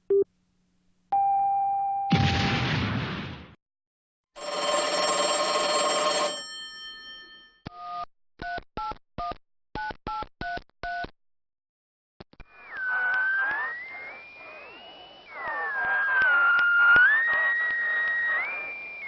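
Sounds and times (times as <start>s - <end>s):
telephone bell ringing: 4.4s - 7.6s.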